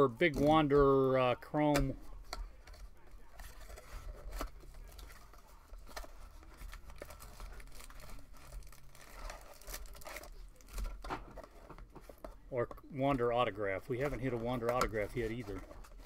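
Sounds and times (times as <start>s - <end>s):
packaging tearing and rustling: 3.2s - 12.2s.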